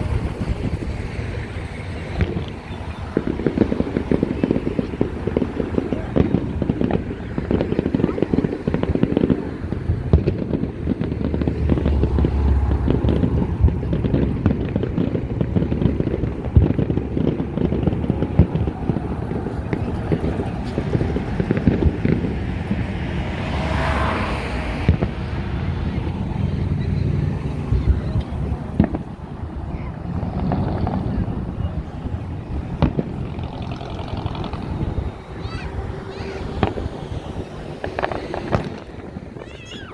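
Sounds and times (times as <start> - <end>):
fireworks crackling and popping: 0.0 - 39.9
heavy low rumble: 8.8 - 39.4.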